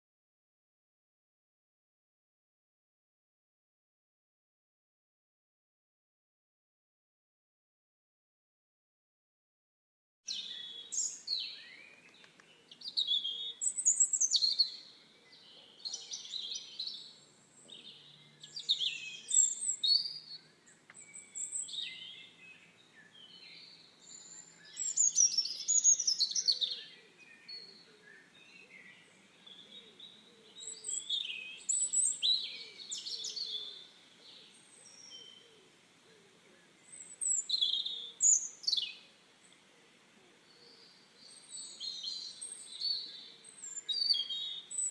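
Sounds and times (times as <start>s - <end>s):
faint steady hiss: 10.3s - 44.9s
songbirds chirping: 10.3s - 44.9s.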